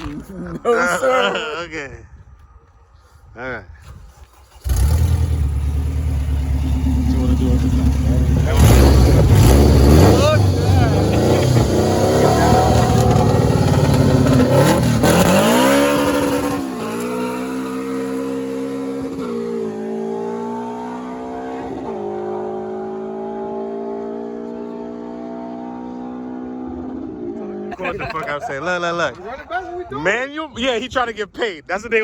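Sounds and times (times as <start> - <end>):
car engine accelerating hard: 4.2 - 27.8.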